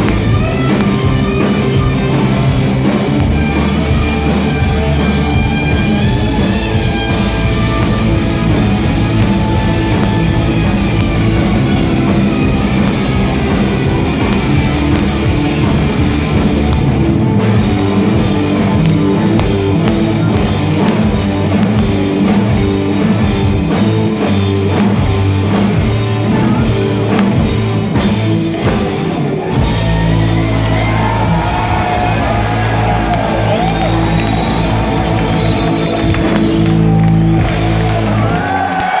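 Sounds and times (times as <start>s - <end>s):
rock band playing live: 0.0s - 39.0s.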